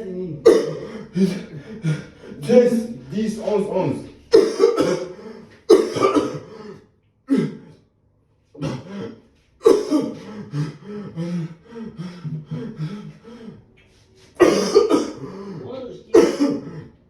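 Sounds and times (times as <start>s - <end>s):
man hacking coughs: 0.4s - 1.6s, 4.3s - 7.8s, 8.6s - 10.8s, 14.4s - 17.0s
man coughing harshly: 0.4s - 2.5s, 4.3s - 7.8s, 8.6s - 11.6s, 14.4s - 17.0s.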